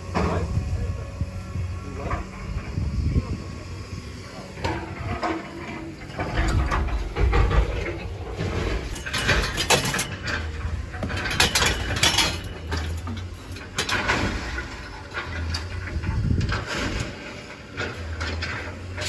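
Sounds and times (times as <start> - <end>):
metallic clanking and rattling: 4.6 - 19.0.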